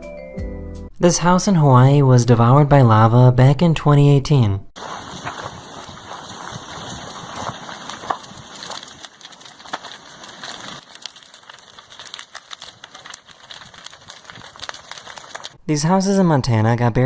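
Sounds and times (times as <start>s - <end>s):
burning house crackling and popping: 4.8s - 15.6s.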